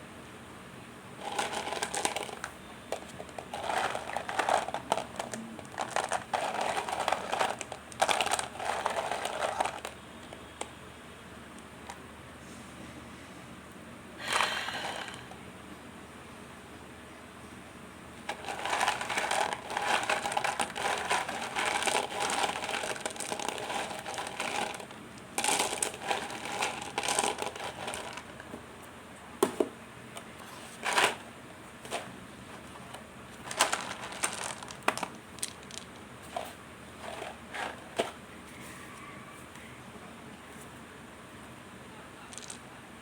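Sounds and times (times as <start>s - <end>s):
plastic packaging crinkling: 1.2s - 10.0s, 18.3s - 28.5s, 33.4s - 36.5s.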